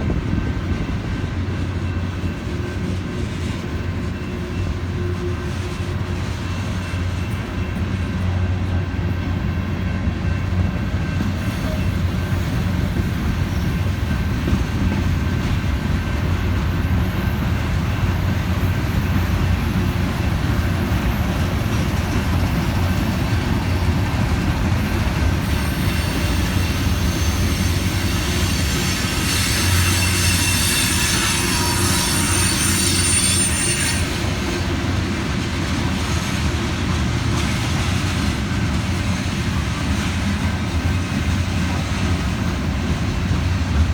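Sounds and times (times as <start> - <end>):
freight train wheels rumbling on rail: 0.0 - 43.9
high-pitched wheel squeal: 25.5 - 34.4.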